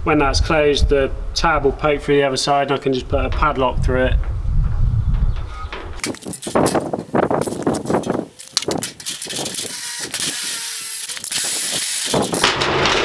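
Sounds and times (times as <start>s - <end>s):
metal clanks and knocks: 4.2s - 9.0s, 12.2s - 13.0s
power tool high hiss: 9.2s - 12.4s.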